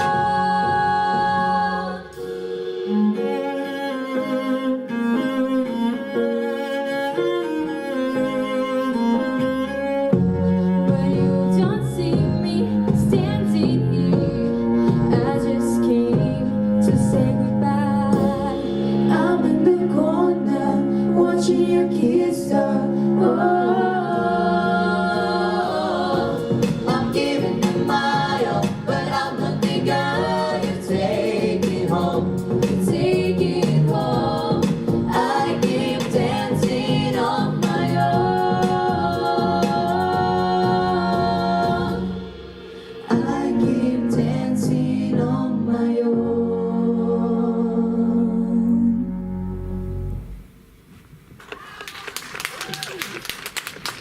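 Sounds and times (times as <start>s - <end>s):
pop song with singing: 0.0s - 3.2s, 10.2s - 49.2s.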